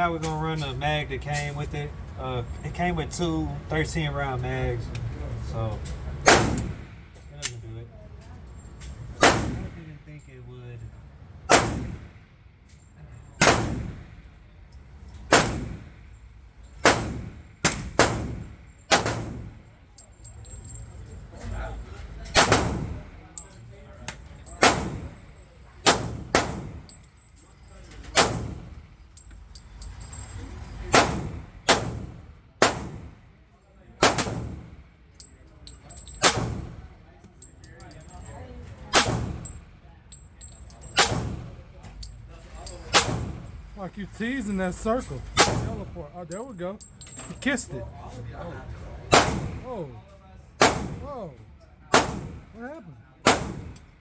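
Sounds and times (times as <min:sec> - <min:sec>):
pistol shots echoing: 0:09.2 - 0:09.6, 0:11.5 - 0:12.0, 0:13.4 - 0:14.0, 0:16.8 - 0:19.5, 0:22.4 - 0:23.0, 0:24.6 - 0:25.2, 0:25.8 - 0:26.9, 0:30.9 - 0:33.2, 0:34.0 - 0:34.7, 0:41.0 - 0:41.5, 0:49.1 - 0:49.6, 0:50.6 - 0:51.0, 0:51.9 - 0:52.5, 0:53.2 - 0:53.8
metallic clinks of brass casings: 0:19.6 - 0:22.3, 0:23.2 - 0:24.6, 0:26.8 - 0:30.9, 0:35.1 - 0:36.4, 0:37.3 - 0:38.7, 0:39.4 - 0:41.1, 0:41.9 - 0:45.4, 0:46.2 - 0:48.2.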